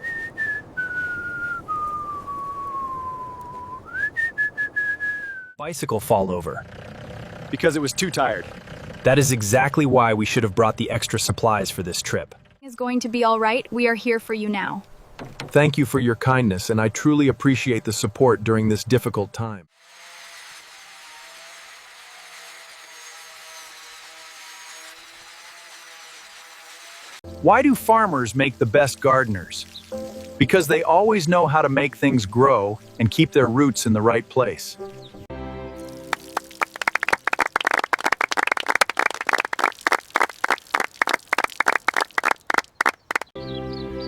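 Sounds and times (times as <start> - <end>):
even hiss: 27.8 - 33.2
people clapping: 35.9 - 43.3.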